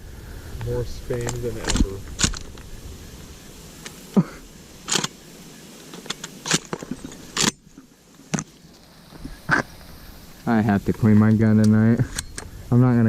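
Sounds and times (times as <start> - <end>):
shotgun action clicking: 4.9 - 5.2.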